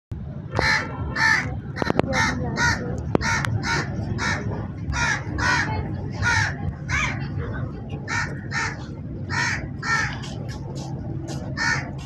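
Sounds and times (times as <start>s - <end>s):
low background rumble: 0.1s - 12.0s
crows cawing: 0.6s - 7.2s, 8.1s - 10.3s, 11.6s - 12.0s.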